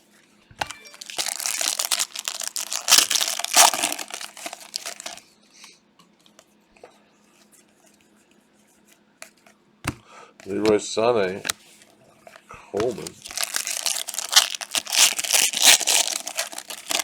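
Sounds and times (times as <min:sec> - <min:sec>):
foil wrapper tearing and crinkling: 0:00.6 - 0:05.2, 0:12.8 - 0:17.0
cards clicking: 0:09.9 - 0:11.6, 0:12.8 - 0:17.0.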